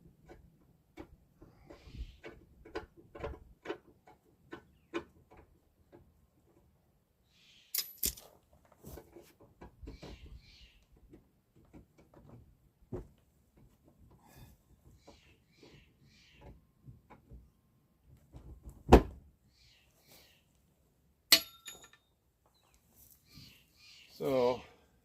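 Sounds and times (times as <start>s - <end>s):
hand tools clicking and knocking: 7.8s - 8.3s, 21.3s - 22.0s.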